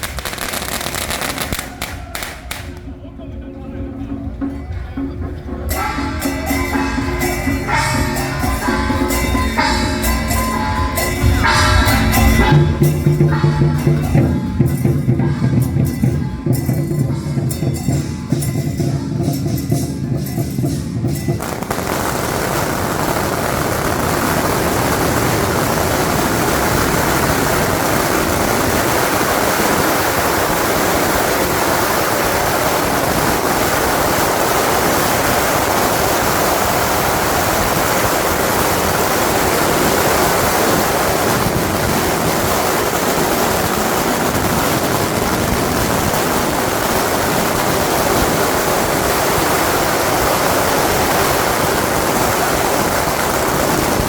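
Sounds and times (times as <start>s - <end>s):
firecrackers crackling: 0.0s - 3.2s, 5.7s - 54.0s.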